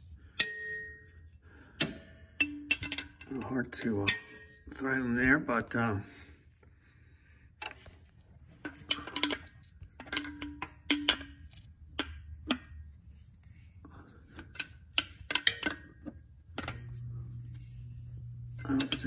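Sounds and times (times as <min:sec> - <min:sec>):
hand tools clinking on metal: 0:01.8 - 0:04.7, 0:08.7 - 0:12.7, 0:14.4 - 0:16.0, 0:18.5 - 0:19.0.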